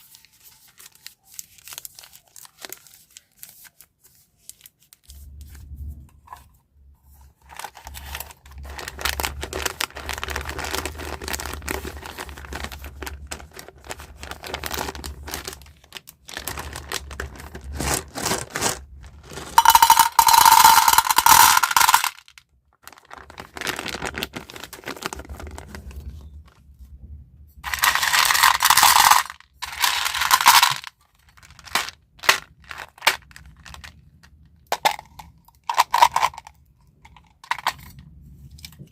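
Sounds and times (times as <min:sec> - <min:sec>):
plastic packaging crinkling: 0:00.0 - 0:05.4, 0:07.4 - 0:26.6, 0:27.6 - 0:34.0.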